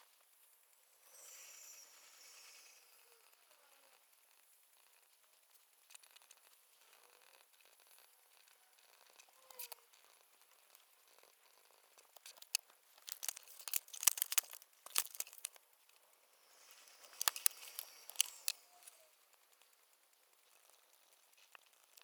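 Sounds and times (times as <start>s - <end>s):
paper rustling and crinkling: 12.2s - 15.6s, 17.1s - 18.5s.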